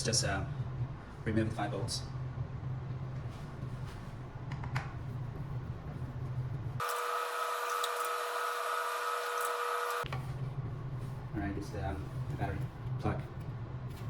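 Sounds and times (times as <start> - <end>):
power screwdriver whine: 6.8 - 10.0.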